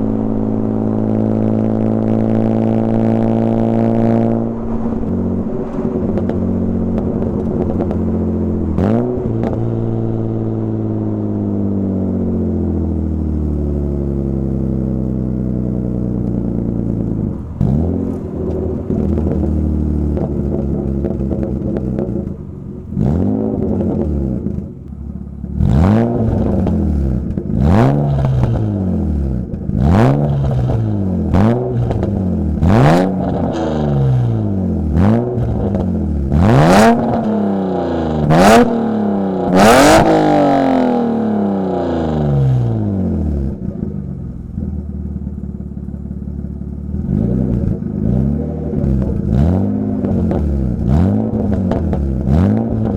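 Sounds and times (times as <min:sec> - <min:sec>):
car engine revving: 0:00.0 - 0:52.9.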